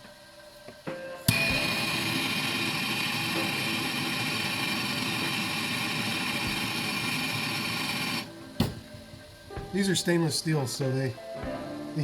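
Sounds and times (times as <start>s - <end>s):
power tool motor running: 1.3s - 8.3s.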